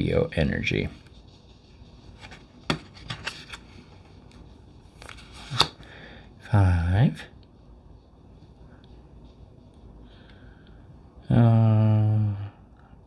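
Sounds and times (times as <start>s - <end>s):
cards clicking and scraping: 2.0s - 5.9s
sharp card tap: 5.0s - 5.8s.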